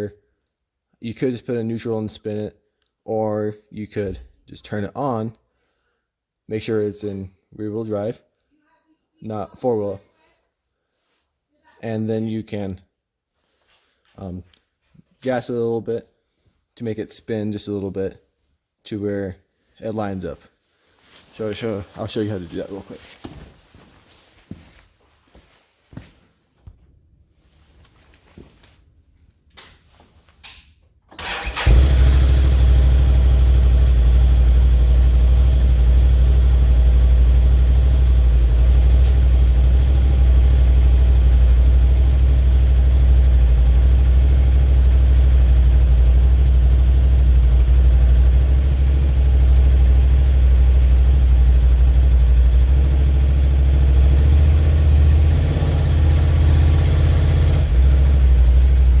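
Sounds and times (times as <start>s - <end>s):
atv engine starting and idling: 31.1s - 59.0s.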